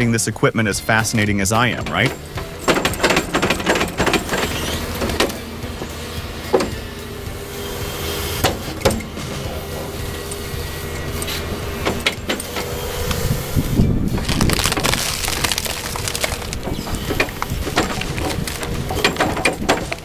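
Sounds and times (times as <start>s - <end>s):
excavator engine running: 0.0s - 20.0s
wood cracking and splitting: 1.6s - 6.9s, 10.4s - 20.0s.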